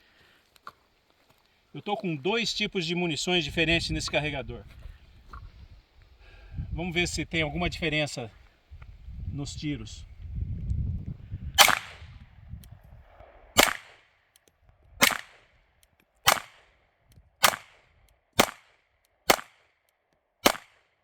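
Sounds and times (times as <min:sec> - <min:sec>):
pistol shots: 0:11.6 - 0:12.0, 0:13.6 - 0:14.0, 0:15.0 - 0:15.5, 0:16.2 - 0:16.7, 0:17.4 - 0:19.8, 0:20.4 - 0:20.9.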